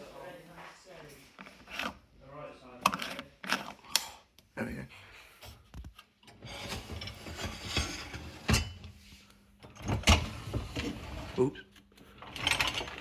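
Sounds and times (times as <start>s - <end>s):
rack rolling and rattling: 6.3s - 8.9s, 9.6s - 11.4s, 12.2s - 13.0s
dishwasher clicks and knocks: 9.7s - 10.8s.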